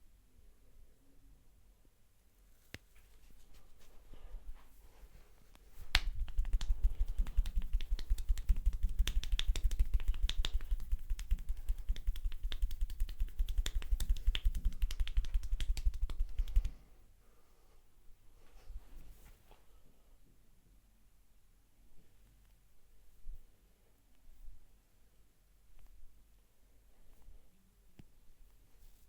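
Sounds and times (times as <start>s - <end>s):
hands tapping on body: 5.9s - 16.8s.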